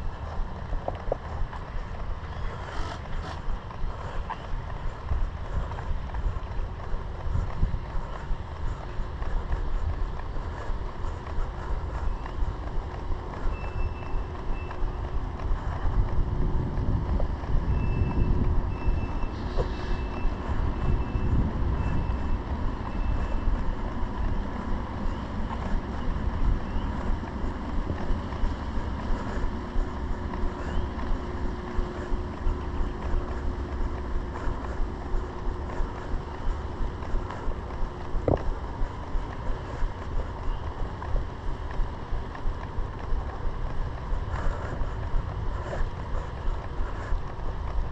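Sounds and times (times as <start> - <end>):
footsteps: 0.0 - 47.9
traffic rumble: 0.0 - 47.9
wind buffeting microphone: 0.0 - 47.9
reversing beeper beeps: 13.5 - 14.9, 17.7 - 23.6.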